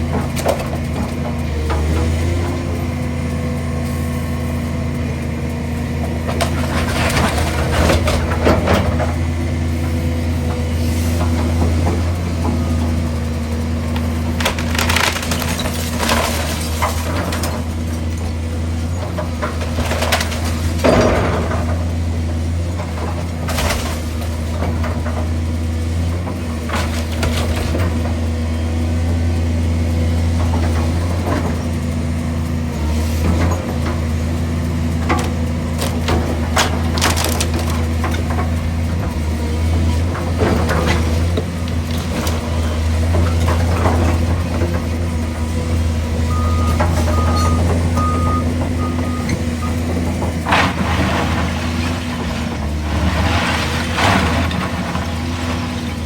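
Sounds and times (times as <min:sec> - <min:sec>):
demolition machine engine running: 0:00.0 - 0:56.0
wood cracking and splintering: 0:13.7 - 0:17.8, 0:35.1 - 0:38.6.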